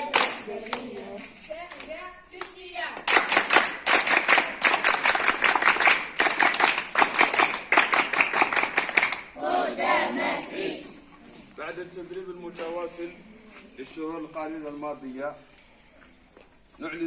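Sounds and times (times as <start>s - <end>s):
voices chanting: 0.0s - 1.4s, 9.4s - 11.1s
group clapping in rhythm: 0.0s - 10.4s.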